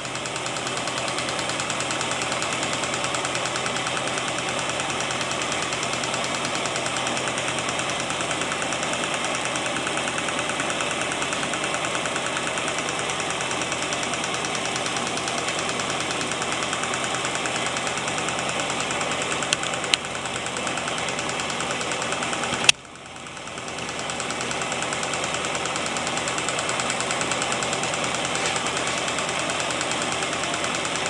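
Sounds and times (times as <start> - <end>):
stirling engine clattering: 0.0 - 31.0.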